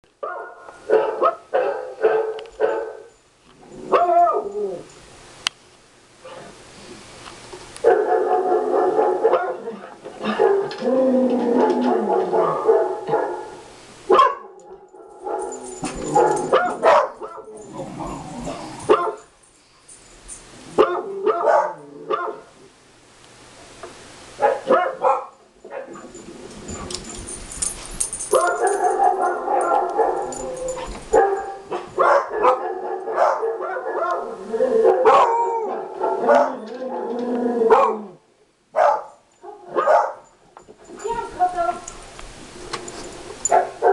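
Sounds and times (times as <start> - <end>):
recorded dogs barking from speaker: 0.2 - 3.1, 3.8 - 4.6, 7.8 - 17.7, 18.8 - 19.3, 20.7 - 22.6, 24.4 - 26.1, 28.3 - 30.5, 31.1 - 38.2, 38.8 - 40.2, 43.5 - 43.9
dogs barking back: 7.8 - 19.3, 20.7 - 22.5, 24.4 - 38.2, 38.8 - 40.3, 43.4 - 43.9.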